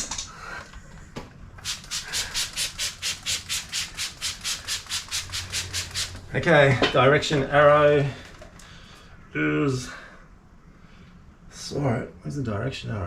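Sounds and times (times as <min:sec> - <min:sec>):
rapid rhythmic scrubbing: 0:01.6 - 0:06.2.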